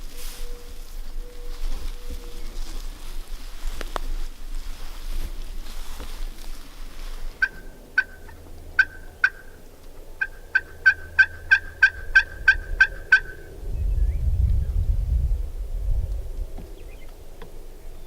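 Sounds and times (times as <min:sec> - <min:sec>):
low rumble: 0:00.0 - 0:18.0
wild turkey calling: 0:07.3 - 0:13.6.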